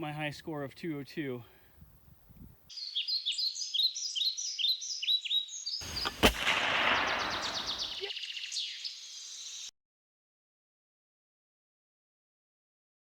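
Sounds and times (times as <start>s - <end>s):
birds chirping: 2.7s - 9.7s
sharp crack with rushing noise: 5.8s - 8.0s.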